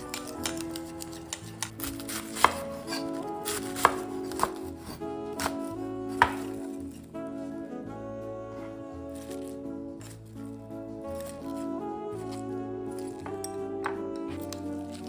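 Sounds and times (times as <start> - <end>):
background music: 0.0 - 15.0
knife chopping on cutting board: 1.6 - 6.6.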